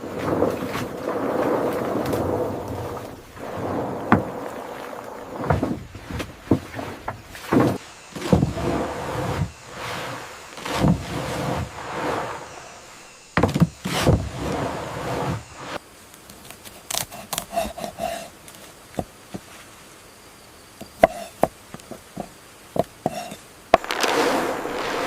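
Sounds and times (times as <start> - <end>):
whooshing swells: 23.8 - 25.0.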